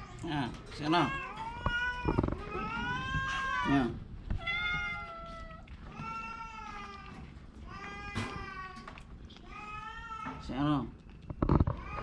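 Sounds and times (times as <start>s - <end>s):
cat meowing: 0.9s - 10.4s.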